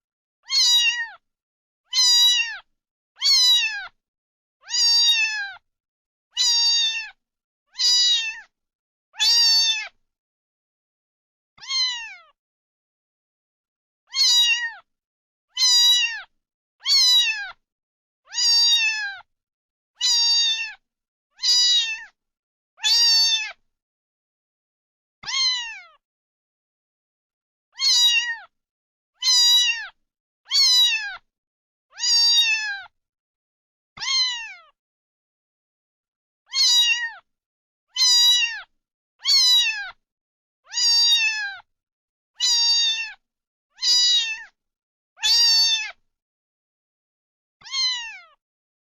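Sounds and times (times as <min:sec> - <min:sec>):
cat meowing: 0:00.4 - 0:01.2, 0:01.9 - 0:04.0, 0:04.6 - 0:05.6, 0:06.3 - 0:08.5, 0:09.2 - 0:10.0, 0:11.6 - 0:12.4, 0:14.1 - 0:14.9, 0:15.5 - 0:17.6, 0:18.3 - 0:19.3, 0:20.0 - 0:20.8, 0:21.4 - 0:22.2, 0:22.8 - 0:23.6, 0:25.2 - 0:26.0, 0:27.7 - 0:28.5, 0:29.2 - 0:31.2, 0:31.9 - 0:32.9, 0:34.0 - 0:34.8, 0:36.5 - 0:37.3, 0:37.9 - 0:40.0, 0:40.7 - 0:41.7, 0:42.4 - 0:43.2, 0:43.8 - 0:44.6, 0:45.2 - 0:46.0, 0:47.6 - 0:48.4.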